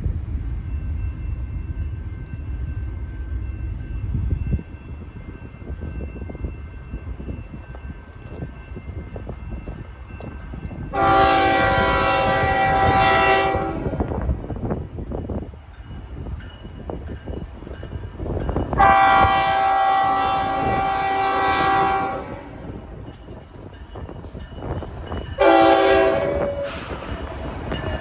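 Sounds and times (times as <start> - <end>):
train wheels rumbling on rails: 0.0 - 28.0
locomotive air horn: 10.9 - 14.1, 18.8 - 22.7, 25.4 - 27.2.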